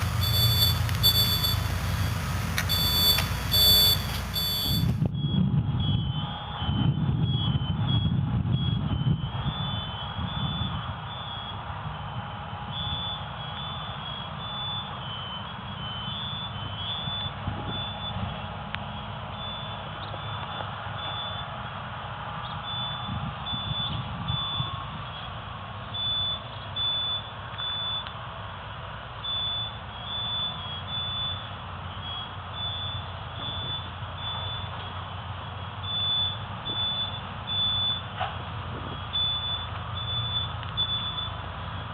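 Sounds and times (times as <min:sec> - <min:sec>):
high electronic beeping: 0:00.0 - 0:11.6, 0:39.1 - 0:41.4
vehicle rumble and road noise: 0:00.0 - 0:41.9.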